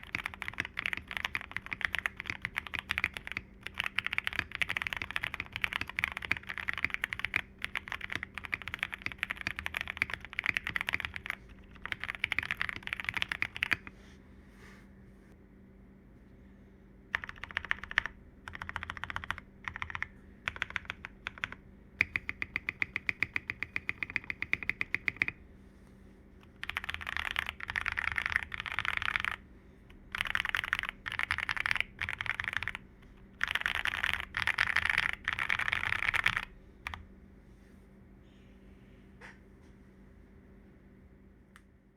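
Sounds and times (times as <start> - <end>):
typing on mechanical keyboard: 0.0 - 13.9, 17.1 - 25.4, 26.5 - 29.4, 30.1 - 32.8, 33.4 - 37.0.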